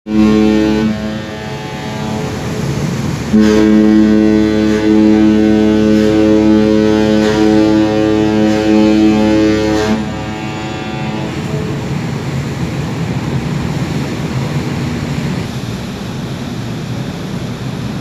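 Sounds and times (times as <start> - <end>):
ship's horn blasts: 0.1 - 12.0.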